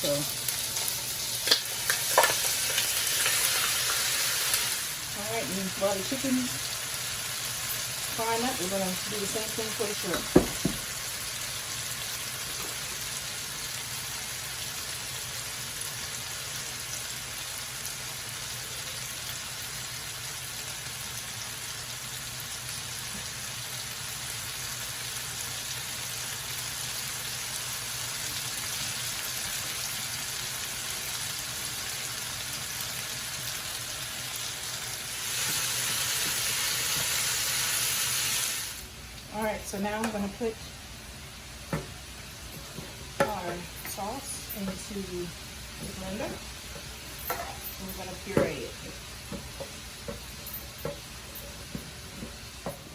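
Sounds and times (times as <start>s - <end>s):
chicken frying in oil: 0.0s - 40.6s.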